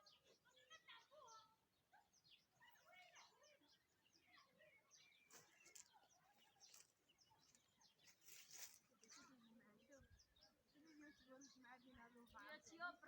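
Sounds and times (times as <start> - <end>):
small birds chirping: 0.0 - 13.0
soft rustles: 5.3 - 9.3.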